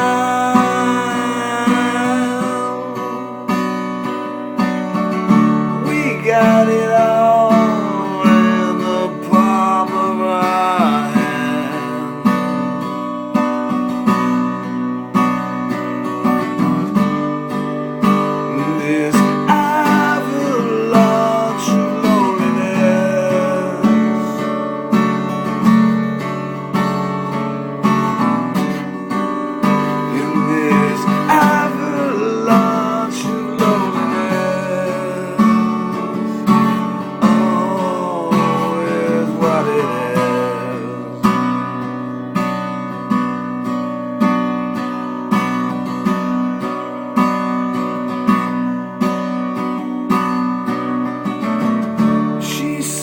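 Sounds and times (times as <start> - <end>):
person singing: 0.0 - 3.5, 5.7 - 12.4, 18.5 - 24.7, 29.8 - 41.8, 52.4 - 53.0
acoustic guitar strumming: 0.0 - 53.0.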